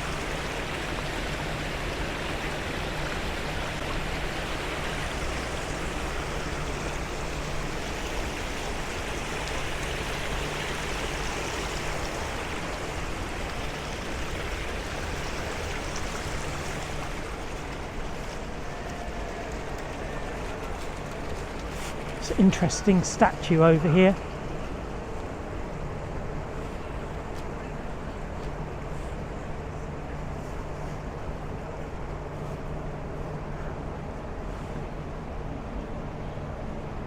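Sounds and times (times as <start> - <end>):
fountain water splashing: 0.0 - 34.7.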